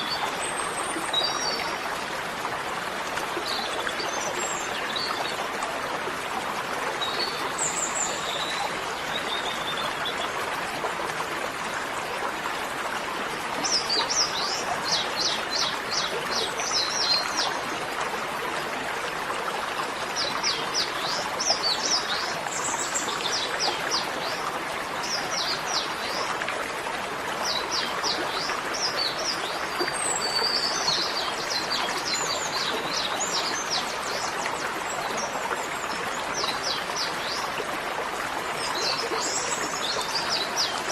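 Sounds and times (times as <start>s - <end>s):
running water rushing: 0.0s - 40.9s.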